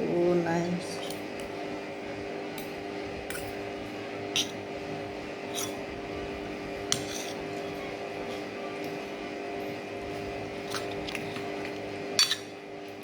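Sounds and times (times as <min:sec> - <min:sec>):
steady background hum: 0:00.0 - 0:13.0
cutlery clicking against plate: 0:03.3 - 0:03.6, 0:12.2 - 0:12.5.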